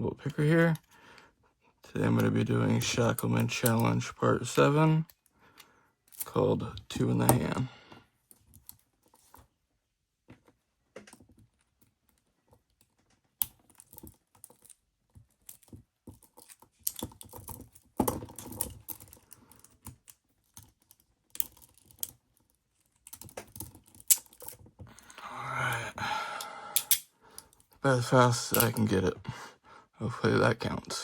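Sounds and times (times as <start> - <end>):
handcuffs clicking and rattling: 2.0 - 4.0, 6.0 - 6.4, 13.4 - 25.2, 26.4 - 27.8, 28.5 - 29.0.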